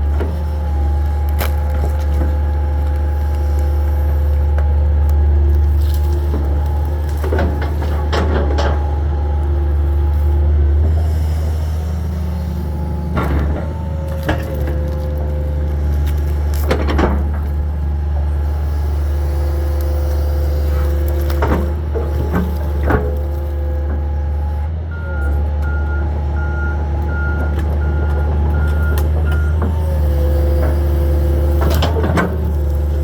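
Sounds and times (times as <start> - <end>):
hydraulic whine: 0.0 - 24.6
excavator diesel engine droning: 0.0 - 33.0.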